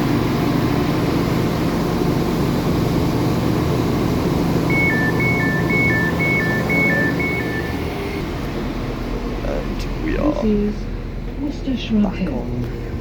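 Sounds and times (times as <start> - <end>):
idling diesel train hum: 0.0 - 13.0
two-tone door warning beeps: 4.7 - 8.2.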